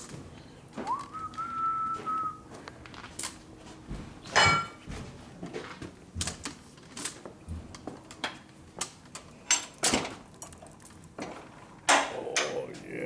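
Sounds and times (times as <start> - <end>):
person whistling: 0.8 - 2.4.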